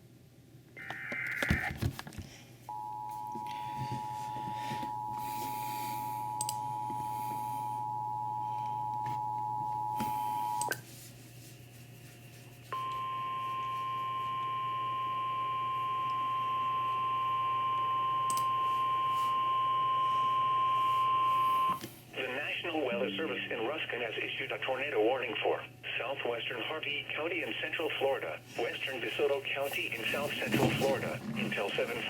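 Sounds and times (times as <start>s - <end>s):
steady high warning tone: 2.7s - 10.8s, 12.8s - 24.1s
two-tone attention signal: 22.9s - 23.7s.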